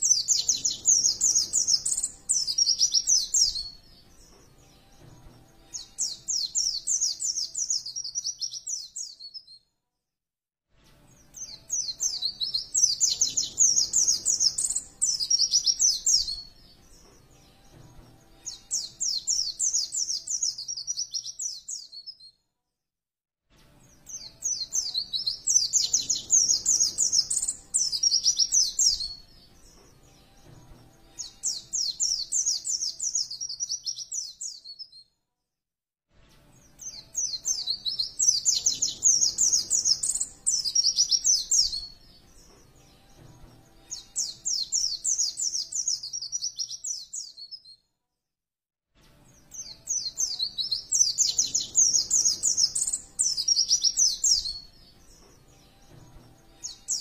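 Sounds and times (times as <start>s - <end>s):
bird chattering song: 0.0s - 3.7s, 11.4s - 16.5s, 24.1s - 29.2s, 36.8s - 42.0s, 49.6s - 54.7s.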